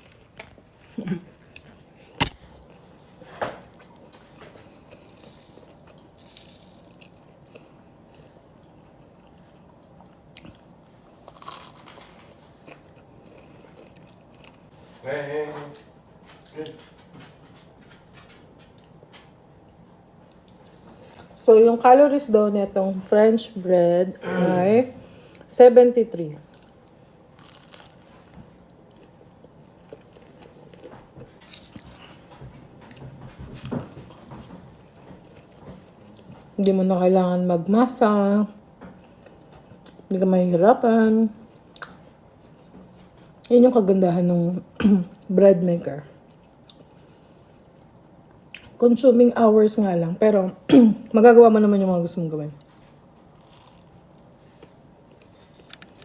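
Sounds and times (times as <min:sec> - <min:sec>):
person chewing crusty bread: 0:03.8 - 0:14.8, 0:26.5 - 0:36.4, 0:46.2 - 0:48.8, 0:52.6 - 0:56.0.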